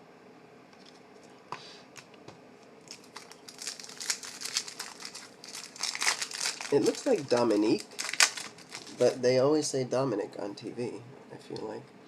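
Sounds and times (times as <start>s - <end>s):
foil wrapper crinkling and tearing: 2.8s - 9.2s.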